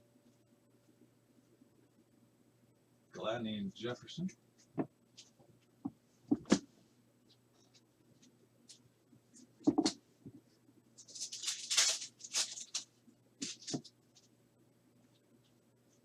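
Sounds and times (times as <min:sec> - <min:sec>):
knock on cards: 0:06.3 - 0:06.7, 0:09.6 - 0:10.0
cards rustling papery: 0:11.0 - 0:14.3.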